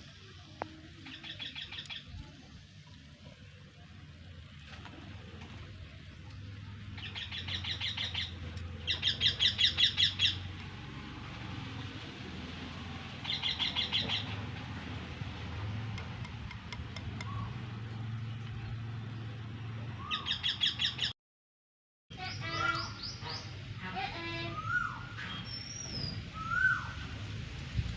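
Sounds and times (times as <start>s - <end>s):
bird chattering trills: 1.0s - 2.1s, 7.0s - 10.4s, 13.2s - 14.4s, 20.0s - 21.1s.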